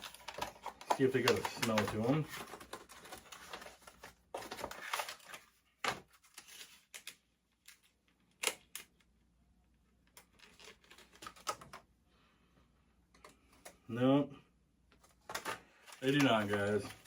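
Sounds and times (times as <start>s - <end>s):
packet clicks and snaps: 0.0s - 2.1s
plastic packet crinkling: 0.0s - 5.5s, 15.3s - 17.0s.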